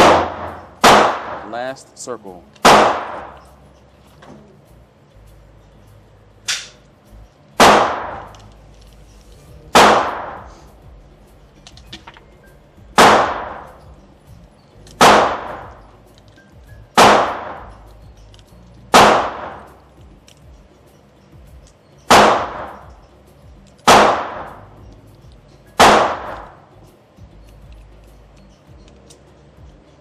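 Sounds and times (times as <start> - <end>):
pistol shots: 0.0 - 1.5, 2.6 - 3.4, 7.6 - 8.3, 9.7 - 10.5, 13.0 - 13.8, 15.0 - 15.8, 17.0 - 17.7, 18.9 - 19.8, 22.1 - 22.9, 23.8 - 24.6, 25.8 - 26.6.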